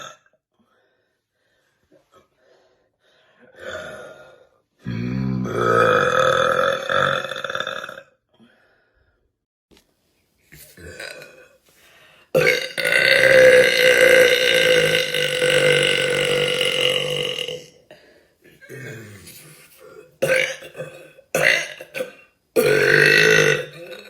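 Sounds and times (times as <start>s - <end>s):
woman burping: 0.0s - 0.3s, 4.8s - 8.0s, 12.4s - 17.8s, 20.0s - 24.0s.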